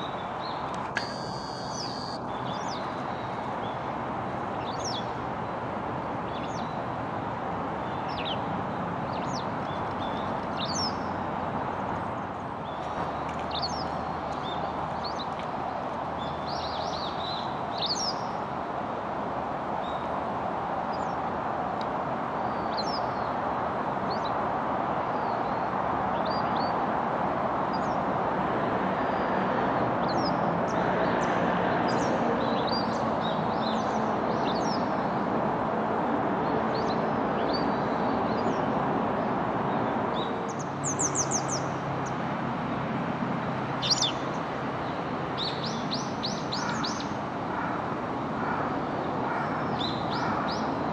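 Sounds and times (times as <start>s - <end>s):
small birds chirping: 0.0s - 3.9s.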